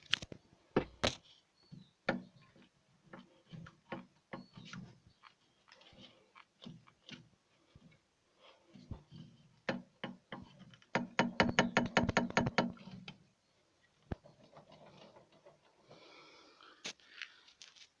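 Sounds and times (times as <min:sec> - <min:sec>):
coil springs knocking: 0:08.9 - 0:13.2.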